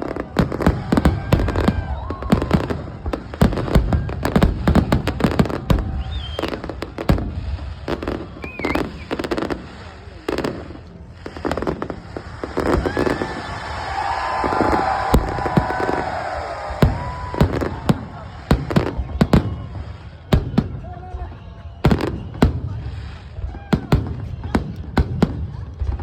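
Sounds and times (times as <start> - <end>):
fireworks bangs and crackles: 0.0 - 26.0
fireworks whistling squeals: 3.6 - 10.5, 11.2 - 23.9.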